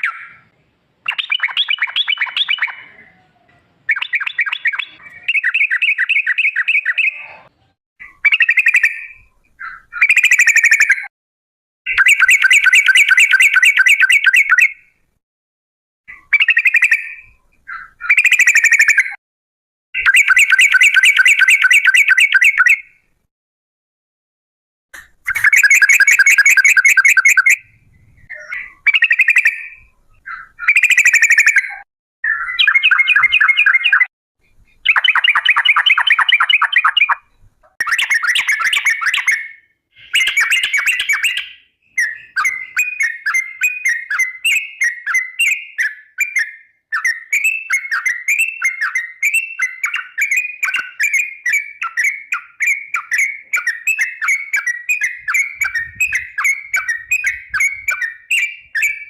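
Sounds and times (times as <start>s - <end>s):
bird singing rolling trills: 0.0s - 11.1s, 11.9s - 14.8s, 16.1s - 19.2s, 20.0s - 22.8s, 25.3s - 59.0s
bird chattering notes: 25.0s - 27.6s, 40.0s - 46.4s.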